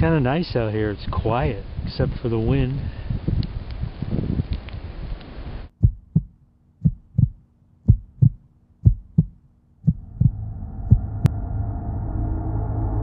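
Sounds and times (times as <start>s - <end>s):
heartbeat thumps: 5.7s - 11.4s
low ambient music drone: 10.0s - 13.0s.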